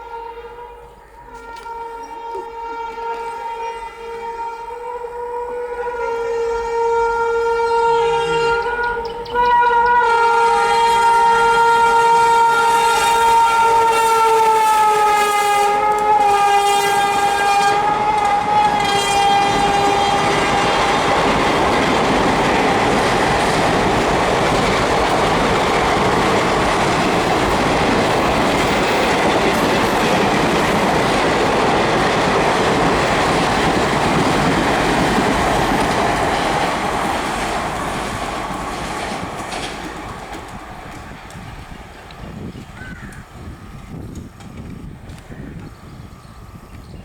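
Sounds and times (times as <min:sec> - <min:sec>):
train passing at speed: 0:00.0 - 0:47.0
wheels running over rails: 0:17.2 - 0:42.2.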